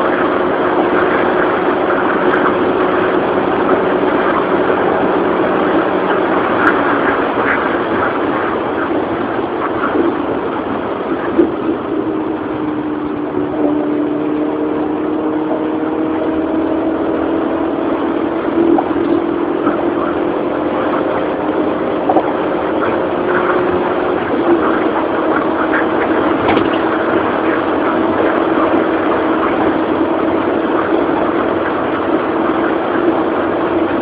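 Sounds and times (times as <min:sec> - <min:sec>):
car engine running: 0:00.0 - 0:34.0.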